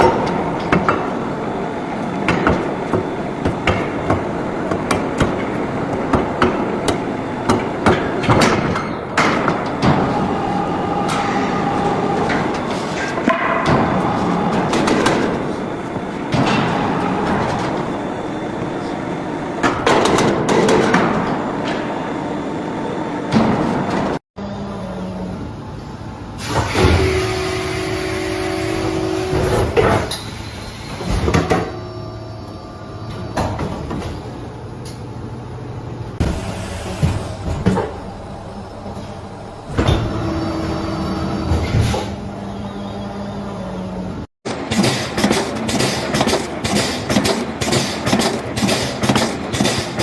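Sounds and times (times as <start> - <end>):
factory machinery humming: 0.0 - 50.0
machine knocks and clanks: 2.0 - 10.2, 19.6 - 21.9, 44.5 - 50.0.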